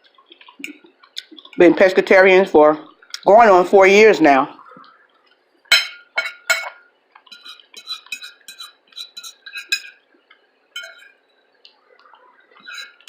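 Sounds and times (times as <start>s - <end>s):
utensil clinking on a dish: 5.7s - 10.0s, 10.8s - 11.2s.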